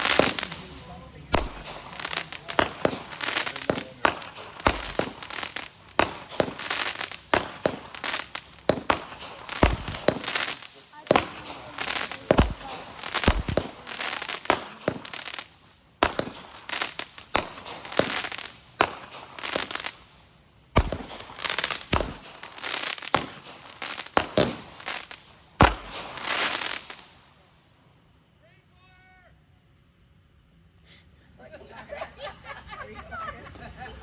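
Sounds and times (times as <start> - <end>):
heavy firework boom: 0.0 - 19.9, 20.6 - 24.9, 25.6 - 26.6
fireworks bangs and crackles: 0.0 - 27.6.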